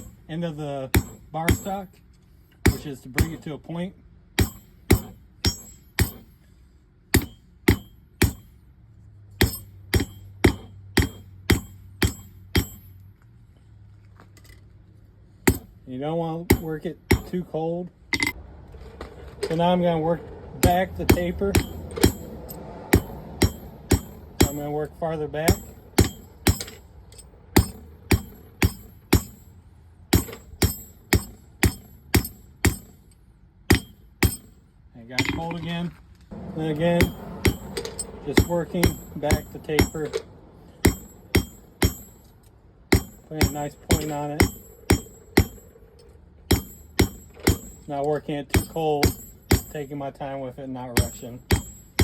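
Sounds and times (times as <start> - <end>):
hammer striking steel on anvil: 0.0 - 0.2, 0.9 - 2.0, 2.6 - 3.5, 4.4 - 6.5, 7.1 - 8.6, 9.4 - 13.0, 15.4 - 15.8, 16.4 - 17.5, 18.1 - 18.4, 20.6 - 29.5, 30.1 - 33.0, 33.7 - 34.6, 35.2 - 35.6, 36.6 - 42.3, 42.9 - 50.0, 50.9 - 52.0.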